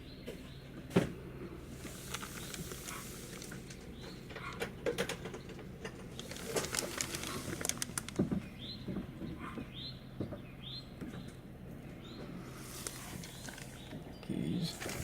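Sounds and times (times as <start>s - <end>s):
small bird chirping: 8.4s - 15.0s.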